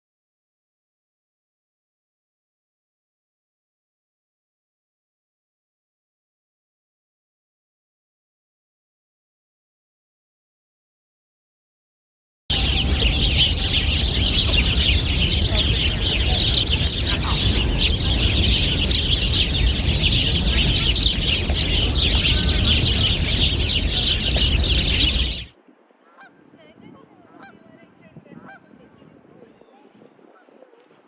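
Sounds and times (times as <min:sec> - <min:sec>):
flock of birds calling: 0:12.5 - 0:26.4
wind rumble on microphone: 0:12.5 - 0:31.0.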